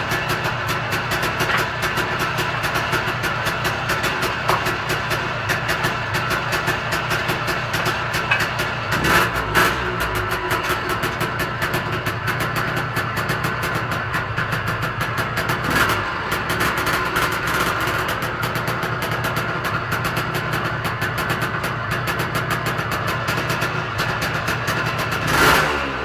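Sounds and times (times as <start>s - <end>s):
two-stroke engine idling: 0.0s - 26.0s.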